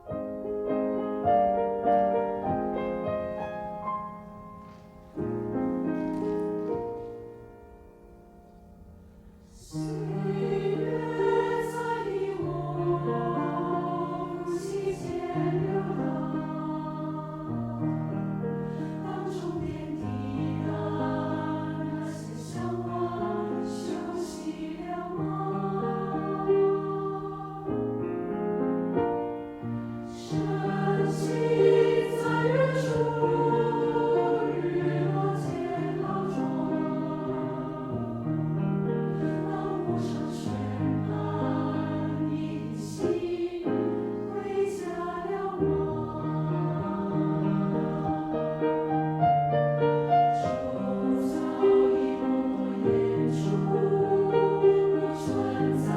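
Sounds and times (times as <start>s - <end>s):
choir singing sustained chords: 6.9s - 55.9s.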